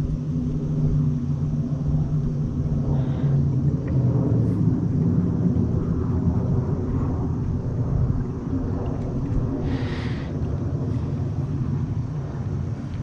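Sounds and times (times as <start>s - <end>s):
jet airliner rumble: 0.0s - 13.0s.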